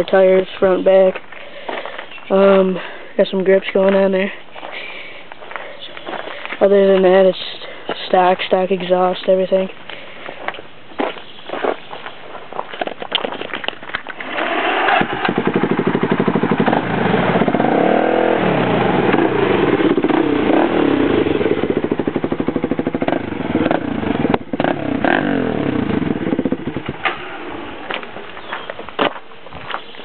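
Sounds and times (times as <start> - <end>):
engine revving: 14.2 - 28.1.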